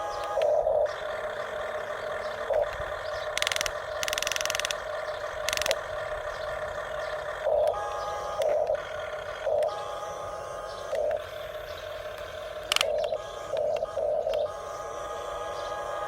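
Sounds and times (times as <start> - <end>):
steady mechanical whirring: 0.0 - 16.0
fast ratcheting clicks: 2.5 - 5.9.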